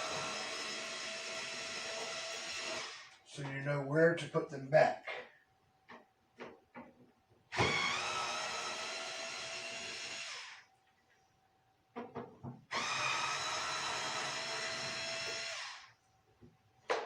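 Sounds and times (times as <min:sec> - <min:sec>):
power drill motor running: 0:00.0 - 0:03.1, 0:07.5 - 0:10.6, 0:12.7 - 0:15.9.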